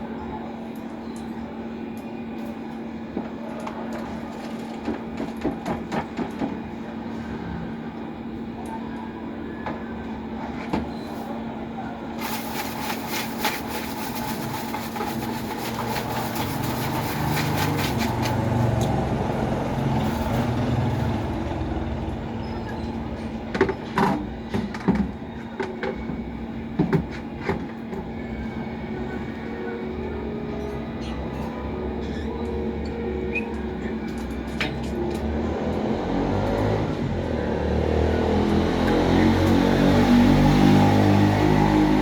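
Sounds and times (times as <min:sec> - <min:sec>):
vehicle passing: 0:16.1 - 0:22.4, 0:34.9 - 0:42.0.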